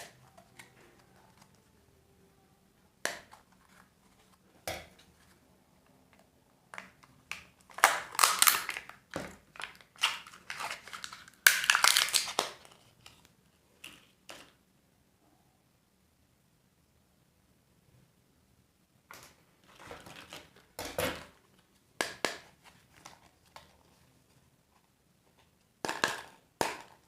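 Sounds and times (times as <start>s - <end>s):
packaging crinkled and torn: 7.3s - 13.3s.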